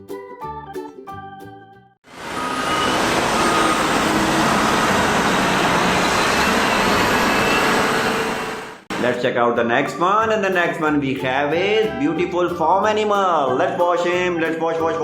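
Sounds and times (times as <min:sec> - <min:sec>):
front loader engine running: 0:02.1 - 0:09.0.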